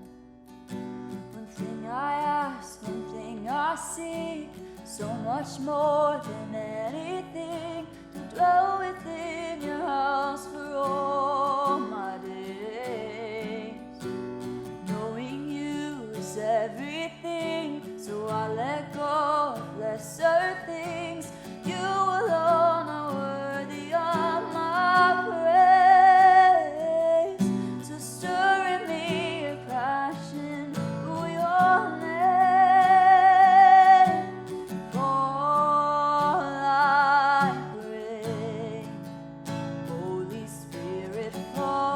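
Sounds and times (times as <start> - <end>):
acoustic guitar: 0.0 - 41.9
person singing worship song: 14.9 - 38.9.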